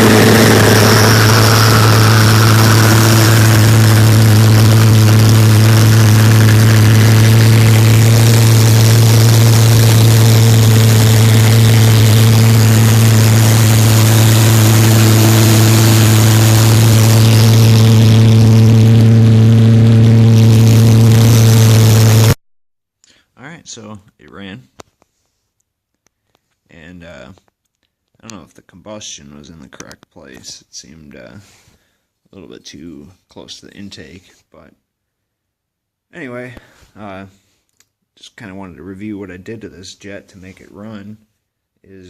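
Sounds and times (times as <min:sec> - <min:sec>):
pulse jet low buzz: 0:00.0 - 0:22.4.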